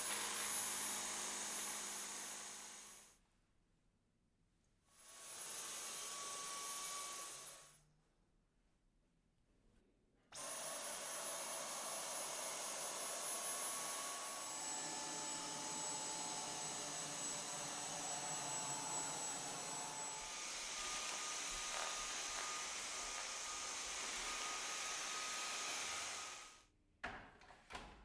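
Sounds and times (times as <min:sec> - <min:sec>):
vacuum cleaner high whine: 0:12.6 - 0:26.5.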